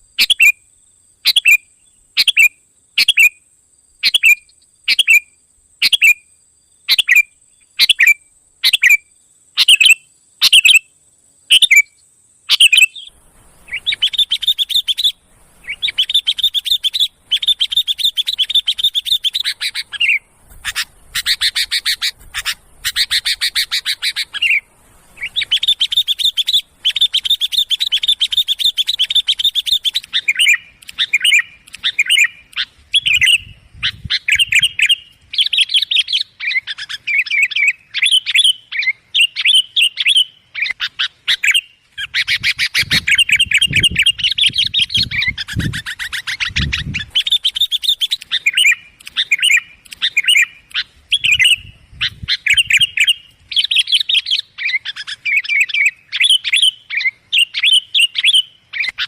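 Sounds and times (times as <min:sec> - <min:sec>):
bulbuls chirping and trilling: 0:12.5 - 0:59.0.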